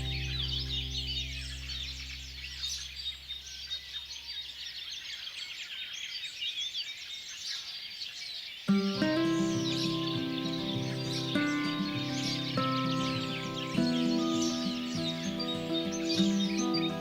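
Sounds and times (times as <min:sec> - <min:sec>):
soft background music: 0:00.0 - 0:02.4, 0:08.7 - 0:17.0
birds chirping and singing: 0:00.0 - 0:17.0.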